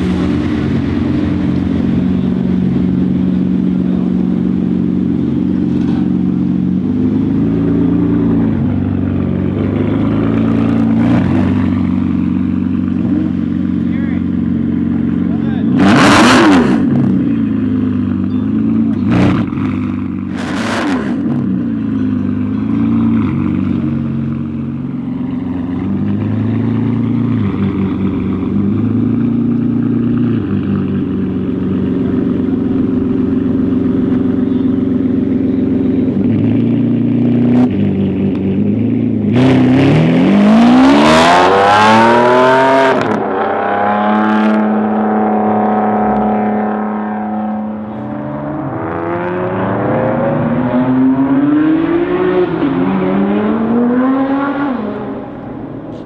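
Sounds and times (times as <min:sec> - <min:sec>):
car engine idling: 0:00.0 - 0:16.0, 0:16.7 - 0:20.4, 0:21.2 - 0:39.4
car engine revving: 0:00.0 - 0:56.0.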